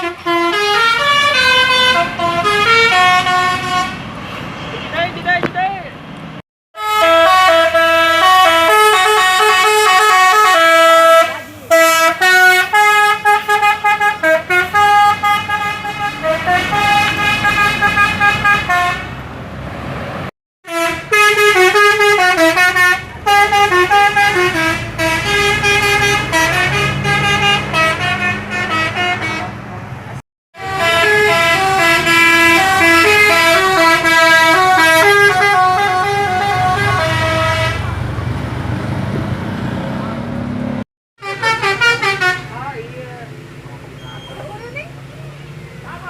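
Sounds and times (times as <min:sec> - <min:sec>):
multi-tone bus horn melody: 0:00.0 - 0:04.0, 0:06.8 - 0:19.2, 0:20.6 - 0:29.6, 0:30.6 - 0:38.0, 0:41.2 - 0:42.9.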